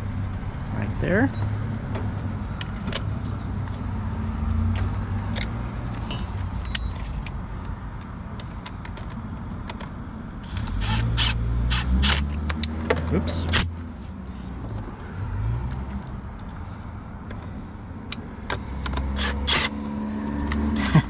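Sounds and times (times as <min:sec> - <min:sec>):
hand tools clicking on plastic and metal: 0:20.4 - 0:21.0.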